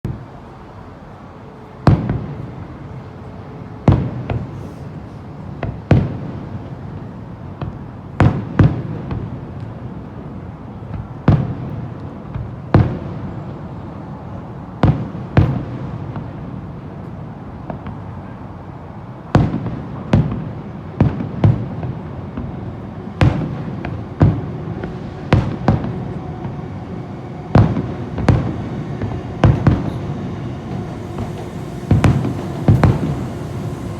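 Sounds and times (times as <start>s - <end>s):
fireworks booming: 19.4s - 33.9s
low rumbling echo: 20.5s - 33.9s.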